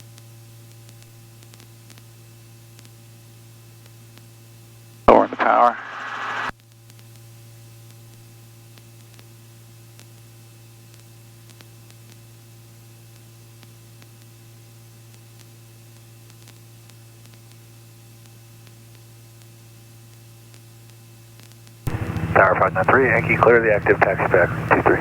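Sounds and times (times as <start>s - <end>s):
electrical hum and hiss: 5.1s - 6.5s, 21.9s - 25.0s.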